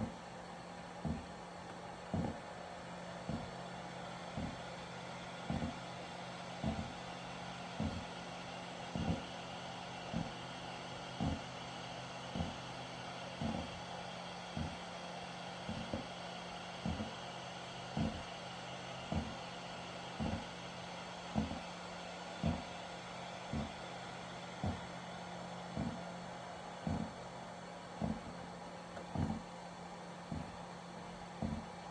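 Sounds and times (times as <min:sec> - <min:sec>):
air conditioner humming: 0:00.0 - 0:31.9
dull knocking: 0:01.0 - 0:02.5, 0:03.2 - 0:03.7, 0:04.4 - 0:04.7, 0:05.4 - 0:05.9, 0:06.6 - 0:07.0, 0:07.8 - 0:08.2, 0:08.9 - 0:09.3, 0:10.1 - 0:10.4, 0:11.2 - 0:11.5, 0:12.3 - 0:12.6, 0:13.4 - 0:13.8, 0:14.6 - 0:14.8, 0:15.7 - 0:16.1, 0:16.8 - 0:17.2, 0:17.9 - 0:18.3, 0:19.1 - 0:19.4, 0:20.2 - 0:20.5, 0:21.3 - 0:21.6, 0:22.4 - 0:22.7, 0:23.5 - 0:23.8, 0:24.6 - 0:24.9, 0:25.7 - 0:26.1, 0:26.8 - 0:27.2, 0:28.0 - 0:29.5, 0:30.3 - 0:30.6, 0:31.4 - 0:31.8.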